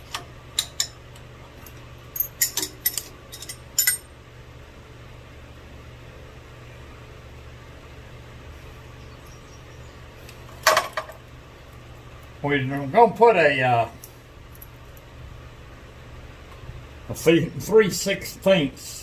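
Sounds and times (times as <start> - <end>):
steady low hum: 0.0 - 19.0
metal tools clicking: 1.6 - 4.1.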